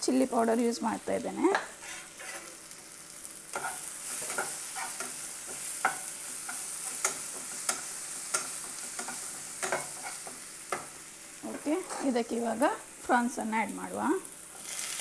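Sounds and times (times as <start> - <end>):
vegetables sizzling in a pan: 0.0 - 15.0
spatula scraping a pan: 1.5 - 2.9, 3.5 - 12.2.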